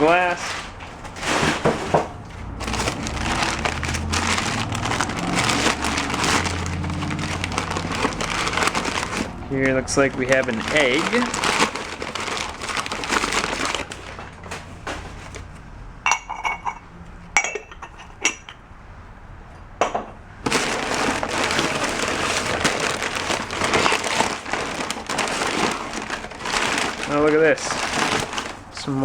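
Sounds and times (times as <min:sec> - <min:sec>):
rustling handling noise: 0:00.0 - 0:17.2, 0:20.4 - 0:29.0
dishes clinking: 0:16.1 - 0:18.6, 0:19.6 - 0:20.2.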